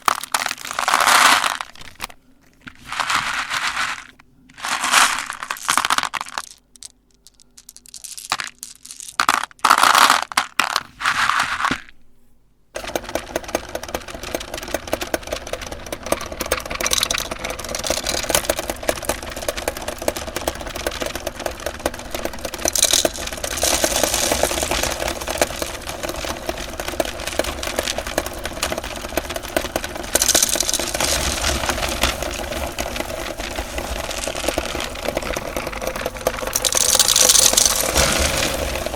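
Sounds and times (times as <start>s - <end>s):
candy crunching: 0.0s - 11.8s, 16.7s - 38.9s
electric meat grinder rattling: 12.8s - 38.9s.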